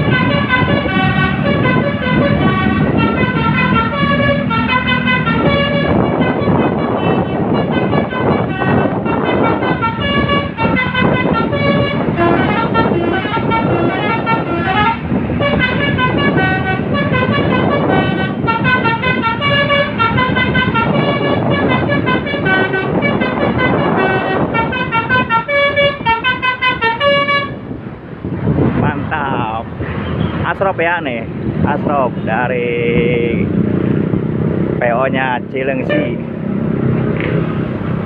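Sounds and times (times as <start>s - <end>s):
musical bus horns: 0.0s - 27.9s, 35.7s - 36.4s.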